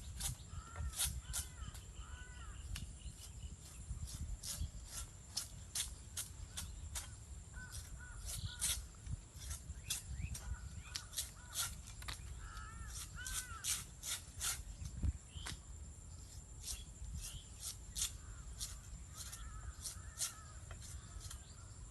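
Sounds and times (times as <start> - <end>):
high insect whine: 0.0 - 21.9
crows cawing: 0.5 - 2.6, 7.5 - 8.7, 10.5 - 13.8, 18.2 - 21.6.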